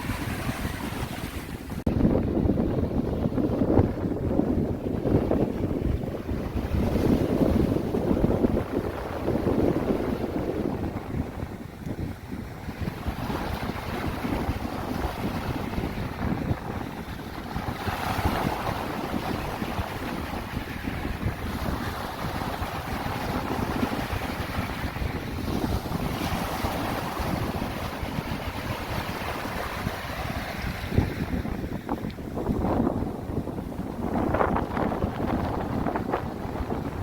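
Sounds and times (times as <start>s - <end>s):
wind buffeting microphone: 0.0s - 37.0s.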